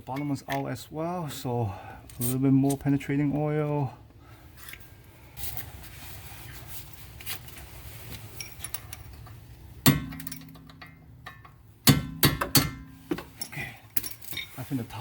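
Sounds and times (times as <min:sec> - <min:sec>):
hammer striking steel bolt: 0:09.9 - 0:12.9.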